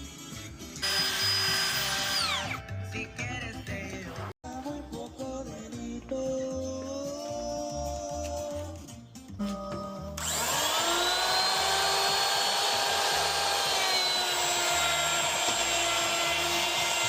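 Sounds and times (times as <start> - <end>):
background music with beat: 0.0 - 0.9, 2.2 - 10.3
power tool motor whining: 0.8 - 2.6, 10.2 - 17.0.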